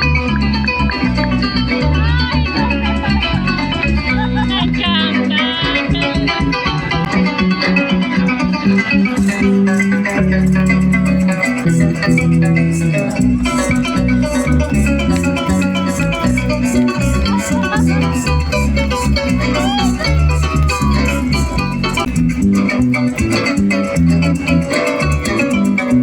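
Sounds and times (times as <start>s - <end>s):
bass line: 0.0s - 26.0s
plucked string melodies: 0.0s - 26.0s
maracas shaking: 9.0s - 26.0s.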